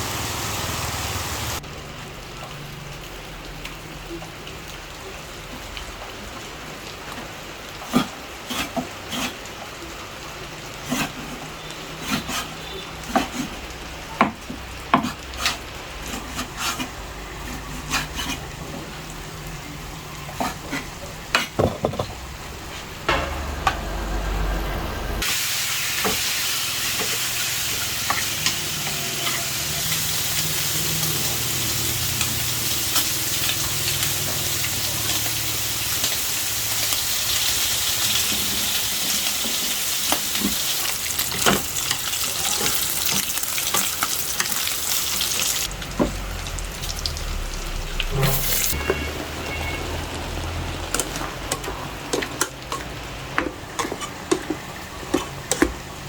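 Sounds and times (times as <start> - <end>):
food sizzling in a pan: 0.0 - 1.6, 25.2 - 56.0.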